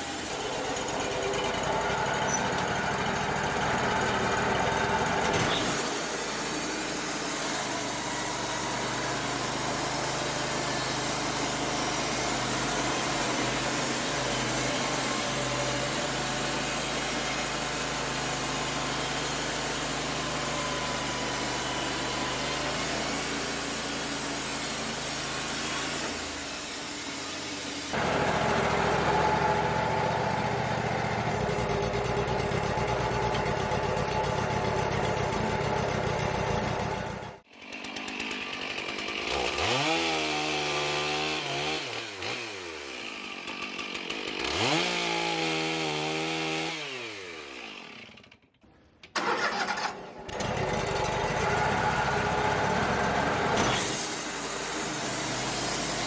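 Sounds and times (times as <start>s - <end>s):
dense hissing saw noise: 0.0s - 3.4s, 5.5s - 31.2s, 51.6s - 56.0s
band sawmill engine running: 0.0s - 48.3s, 49.1s - 56.0s.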